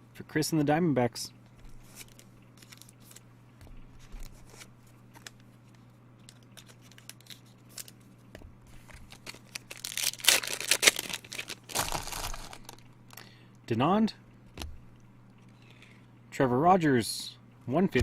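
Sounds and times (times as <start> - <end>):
trading cards clicking and rustling: 3.9 - 8.0, 8.7 - 13.3
wrapper ripped open: 9.1 - 12.8.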